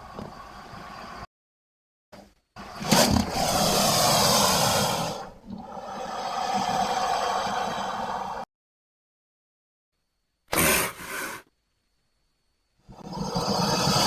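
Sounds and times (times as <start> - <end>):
crocodile rasping calls: 10.5 - 11.5.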